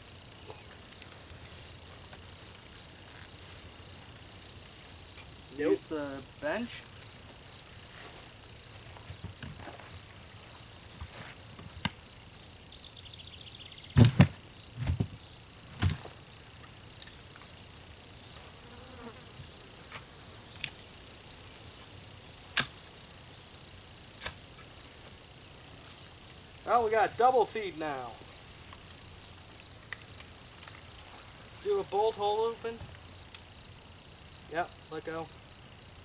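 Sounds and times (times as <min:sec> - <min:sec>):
insects chirring: 0:00.0 - 0:36.0.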